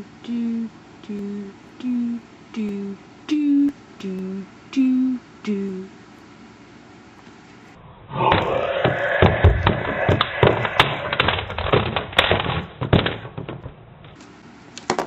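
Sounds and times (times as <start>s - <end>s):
dense noisy bed: 7.7s - 14.2s
knocks and thuds: 8.2s - 14.2s.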